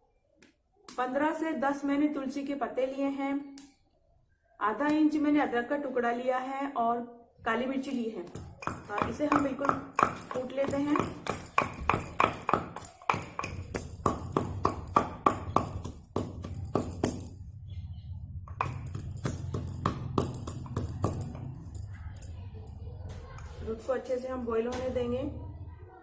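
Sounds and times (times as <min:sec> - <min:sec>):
wooden pestle pounding spices: 0:08.4 - 0:17.5, 0:18.5 - 0:22.4.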